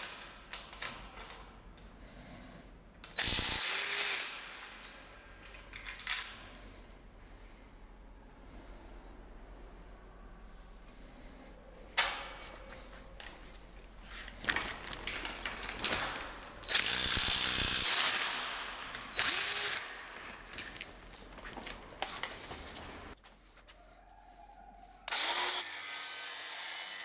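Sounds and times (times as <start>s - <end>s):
power drill whining: 16.7s - 18.2s, 25.1s - 27.0s.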